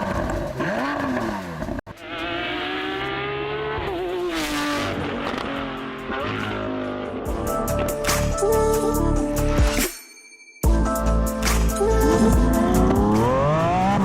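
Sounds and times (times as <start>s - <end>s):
car engine revving: 0.0s - 7.6s, 12.0s - 14.0s.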